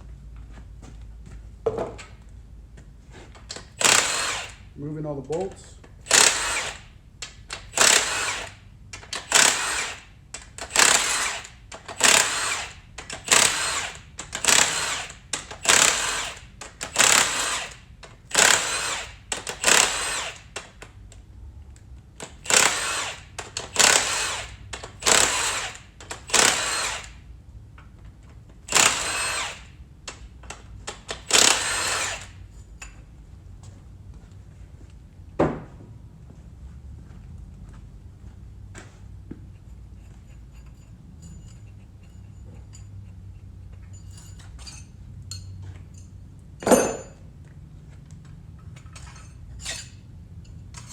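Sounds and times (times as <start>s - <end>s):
power tool bursts: 3.6s - 4.7s, 6.0s - 6.9s, 7.5s - 20.6s, 22.4s - 27.2s, 28.7s - 29.7s, 31.2s - 32.4s.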